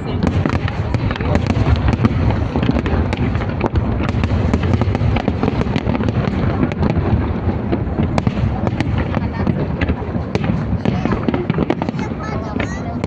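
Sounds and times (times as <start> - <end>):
fireworks cracking and popping: 0.0 - 13.0
low rumble of blasts: 0.0 - 13.0.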